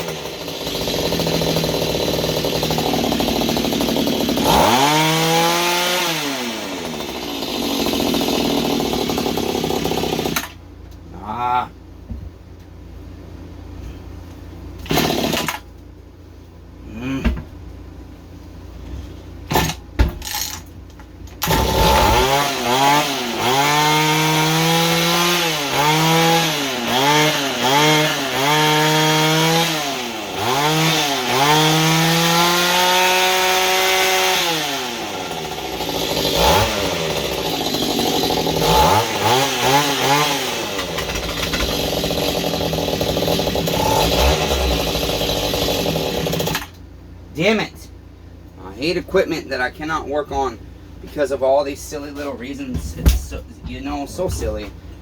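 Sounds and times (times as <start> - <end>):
small engine running unevenly: 0.0 - 10.6, 21.4 - 46.8
small engine knocking: 40.7 - 46.7.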